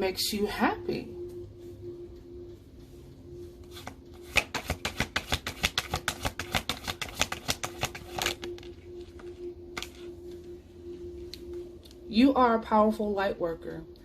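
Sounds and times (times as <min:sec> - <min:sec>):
cards being shuffled: 0:03.7 - 0:08.7.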